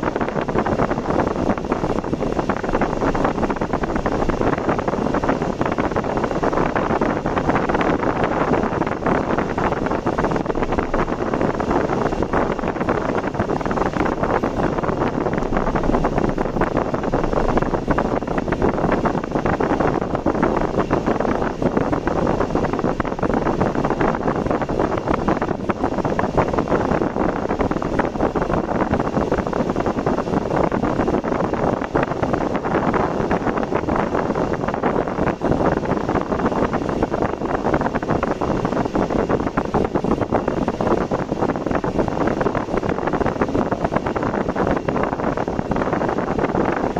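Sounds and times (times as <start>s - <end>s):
car road noise: 0.0s - 34.5s
wind buffeting microphone: 0.0s - 46.9s.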